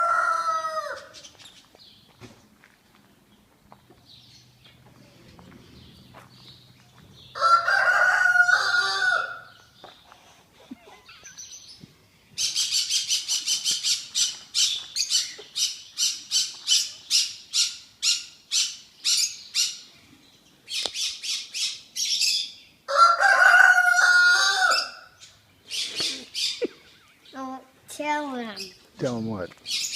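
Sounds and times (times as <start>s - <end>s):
rooster crowing: 0.0s - 1.2s, 7.3s - 9.6s, 22.9s - 25.2s
bird giving harsh high calls: 12.4s - 19.9s.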